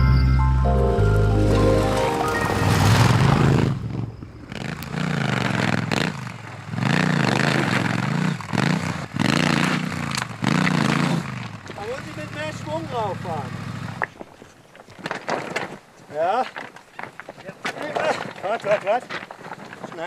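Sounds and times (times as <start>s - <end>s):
motorcycle engine revving: 1.8s - 14.2s
scraping and clattering on stones: 14.0s - 20.0s.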